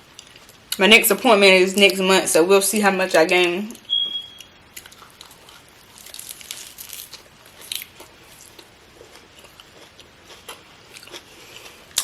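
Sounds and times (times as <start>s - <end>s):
person chewing crunchy food: 4.7s - 12.0s.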